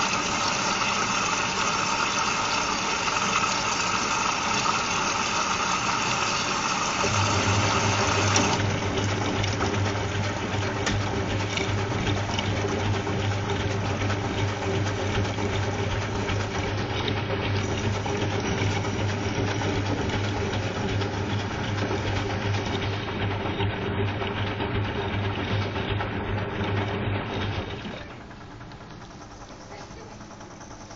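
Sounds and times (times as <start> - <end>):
water rushing in: 0.0 - 12.0
washing machine motor humming: 0.0 - 30.9
water in drum: 0.0 - 30.9.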